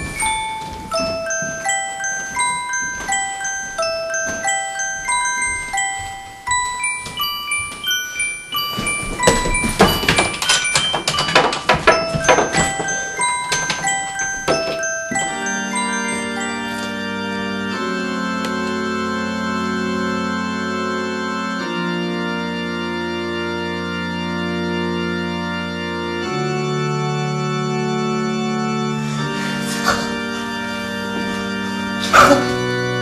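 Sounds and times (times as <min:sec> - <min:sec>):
sustained organ chords: 0:08.4 - 0:33.0.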